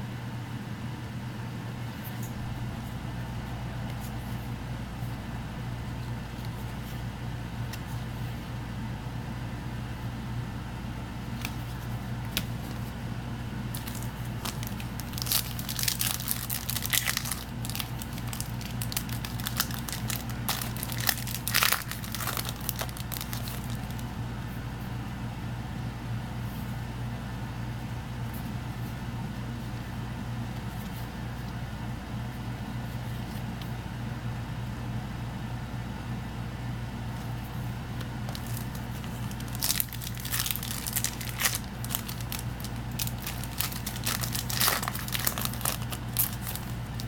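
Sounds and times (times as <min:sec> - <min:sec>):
steady low hum: 0:00.0 - 0:47.0
foil wrappers crinkling and tearing: 0:13.7 - 0:24.0, 0:38.2 - 0:47.0.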